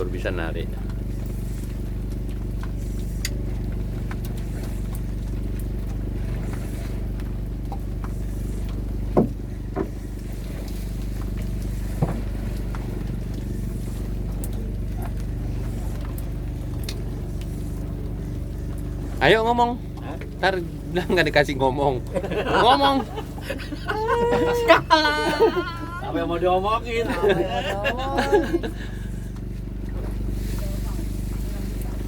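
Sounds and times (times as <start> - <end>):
boat engine humming: 0.0 - 32.0
knocks on boat: 9.0 - 10.1, 11.8 - 13.0.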